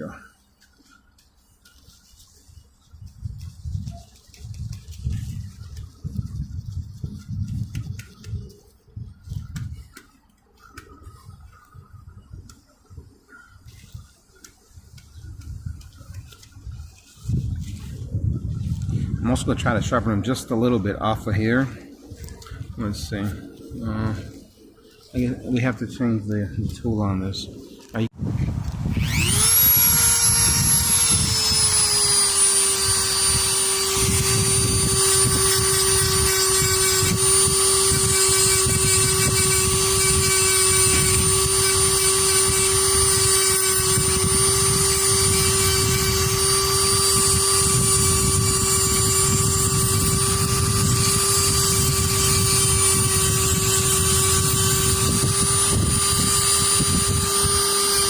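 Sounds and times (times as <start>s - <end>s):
rotary tool whining: 0.0s - 58.0s
bit grinding metal: 28.9s - 58.0s.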